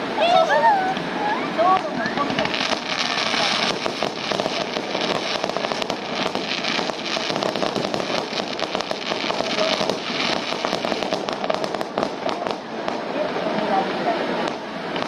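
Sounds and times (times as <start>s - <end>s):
fireworks crackling and popping: 0.0s - 15.0s.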